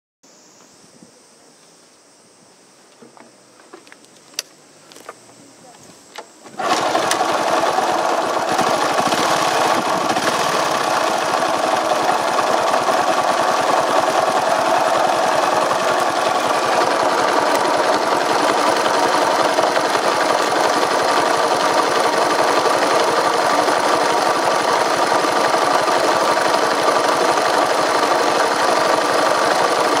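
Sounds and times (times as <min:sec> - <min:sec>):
moped engine running: 0:06.6 - 0:30.0.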